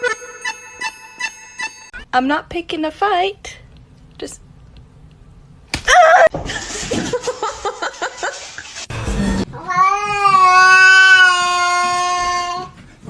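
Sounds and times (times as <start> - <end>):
cat yowling: 9.6 - 12.8.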